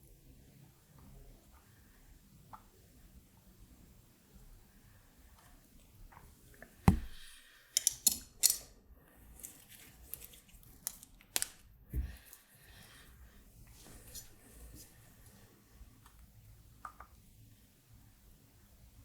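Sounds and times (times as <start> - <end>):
tools knocking on bench: 6.9 - 7.2.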